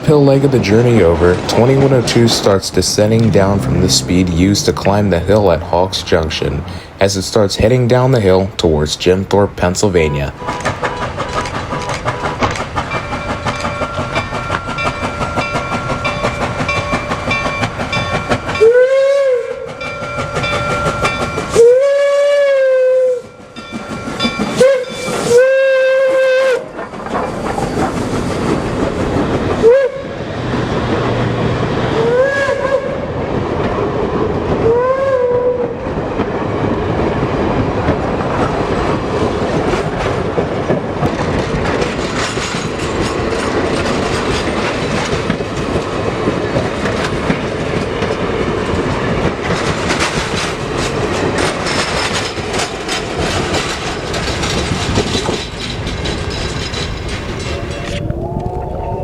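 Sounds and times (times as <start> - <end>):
train rumble: 0.0 - 59.0
wheels clacking on rail: 0.0 - 59.0
steam whistle blowing: 18.6 - 19.6, 21.6 - 23.3, 24.6 - 26.7.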